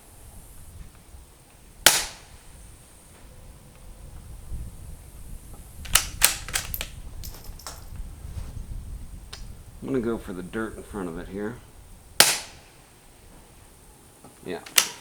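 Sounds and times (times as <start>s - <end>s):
suppressed rifle shot: 1.8s - 2.4s, 5.8s - 7.8s, 12.2s - 12.8s
rifle bolt metallic clicks: 5.8s - 7.8s, 14.6s - 15.0s.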